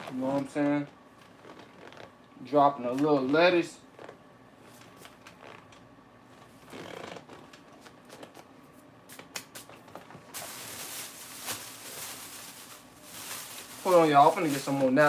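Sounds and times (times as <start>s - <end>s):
lettuce rustling: 10.3s - 15.0s.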